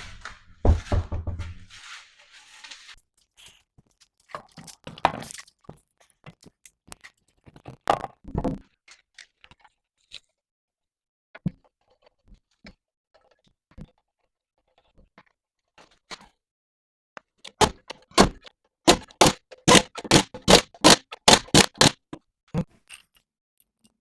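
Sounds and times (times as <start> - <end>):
heavy thump: 0.6 - 1.7.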